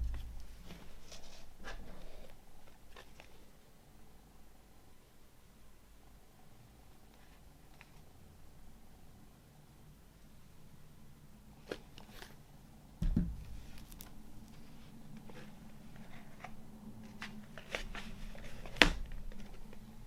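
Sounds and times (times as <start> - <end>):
dull thump: 0.0 - 0.6, 13.0 - 13.7
card and plastic packaging rustling: 13.5 - 19.9.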